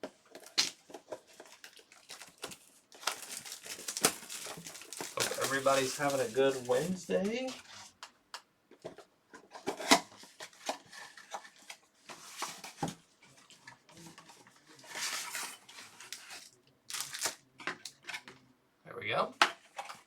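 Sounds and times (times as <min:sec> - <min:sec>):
cards rustling and clicking: 0:00.1 - 0:07.6, 0:13.5 - 0:18.4
card wrappers crinkling and tearing: 0:00.2 - 0:07.4, 0:14.7 - 0:18.3.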